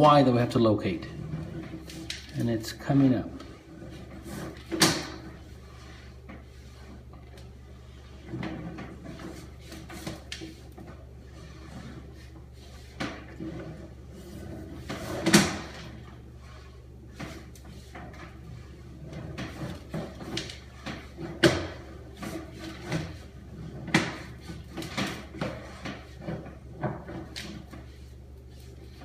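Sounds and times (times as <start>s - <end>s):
steady low hum: 0.0s - 29.0s
cable knocking and scraping in pipe: 0.6s - 29.0s.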